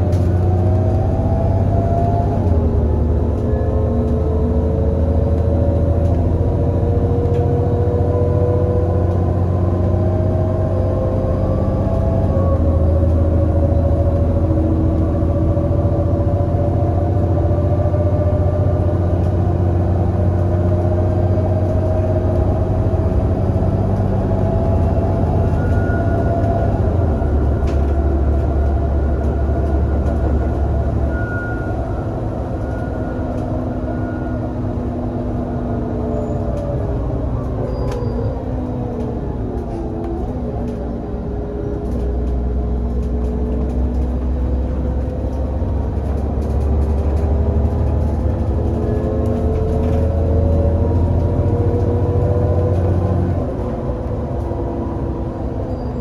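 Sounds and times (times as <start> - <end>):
bus engine pulling under load: 0.0 - 56.0.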